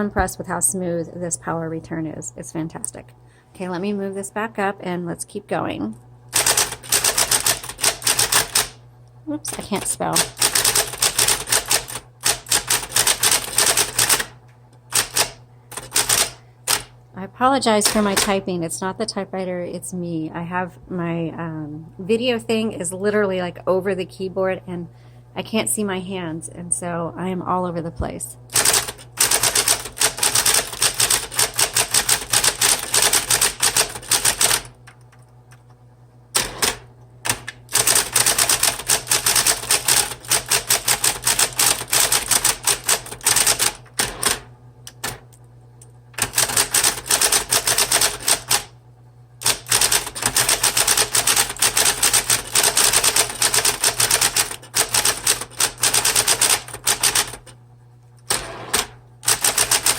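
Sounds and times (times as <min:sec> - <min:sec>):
electric typewriter keystrokes: 0:06.3 - 0:08.8, 0:09.4 - 0:16.9, 0:17.7 - 0:18.4, 0:28.5 - 0:45.5, 0:46.1 - 0:48.7, 0:49.4 - 0:57.6, 0:58.2 - 0:59.9
typewriter motor humming: 0:06.3 - 0:08.8, 0:09.4 - 0:17.0, 0:17.7 - 0:18.4, 0:28.5 - 0:48.8, 0:49.4 - 0:57.6, 0:58.2 - 0:59.9.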